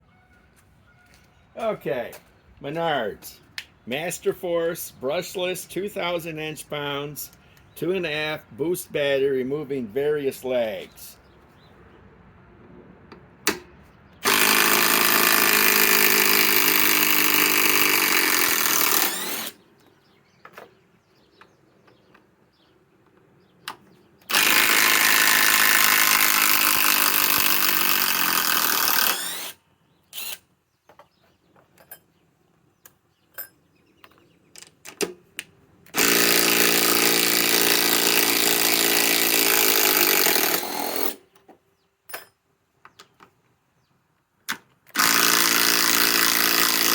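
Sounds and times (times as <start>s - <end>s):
impact driver hammering: 13.5s - 19.6s, 24.3s - 29.6s, 35.9s - 41.2s, 44.9s - 46.9s.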